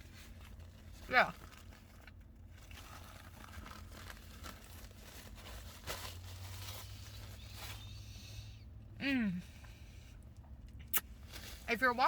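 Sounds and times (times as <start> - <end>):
paper packaging crinkling: 0.0 - 7.7
low steady hum: 0.0 - 12.0.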